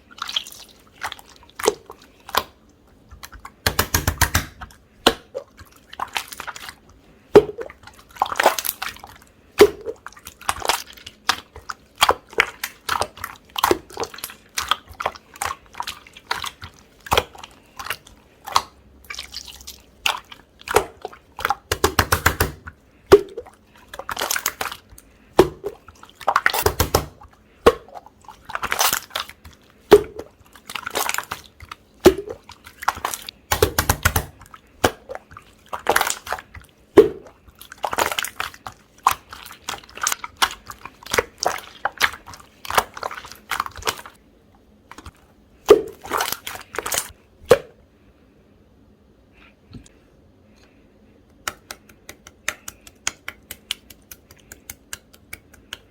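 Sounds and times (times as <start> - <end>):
slime squishing: 0.0 - 47.8, 51.2 - 55.9.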